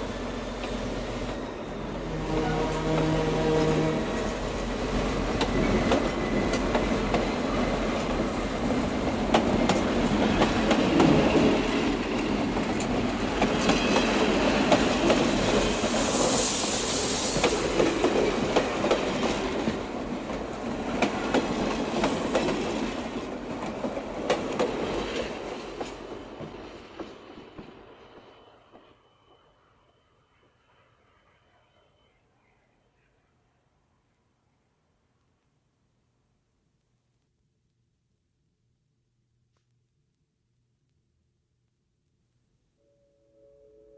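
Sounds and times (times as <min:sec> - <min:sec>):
train passing: 0:00.0 - 0:32.9.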